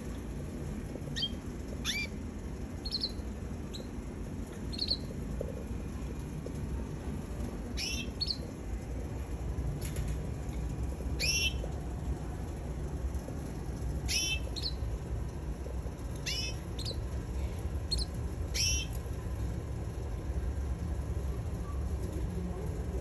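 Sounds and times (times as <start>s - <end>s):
steady low rumble: 0.0s - 23.0s
canary chirp calls: 1.1s - 2.2s, 2.8s - 4.0s, 4.7s - 5.1s, 7.8s - 8.5s, 11.2s - 11.6s, 14.0s - 14.9s, 16.2s - 17.1s, 17.9s - 19.0s.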